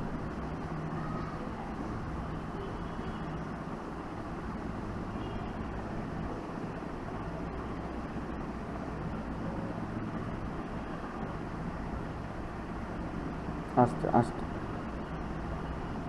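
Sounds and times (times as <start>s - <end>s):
low mechanical hum: 0.0s - 16.0s.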